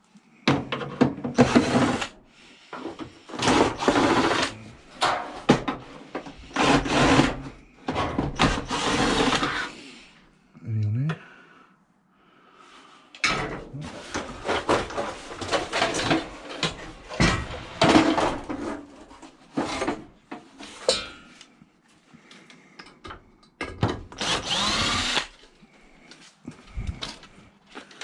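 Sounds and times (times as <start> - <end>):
knocks and clatter of parts: 0.4 - 2.1, 2.7 - 9.4, 13.2 - 21.5, 22.3 - 25.6
power tool whirring: 1.4 - 2.1, 3.4 - 4.6, 8.5 - 9.7, 24.2 - 25.5.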